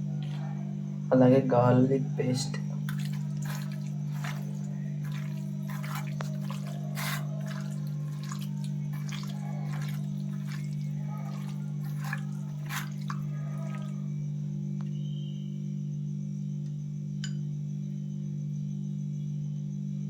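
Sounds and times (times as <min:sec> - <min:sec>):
steady low hum: 0:00.0 - 0:20.0
raw chicken squelching in a bowl: 0:00.1 - 0:00.7, 0:02.2 - 0:14.2.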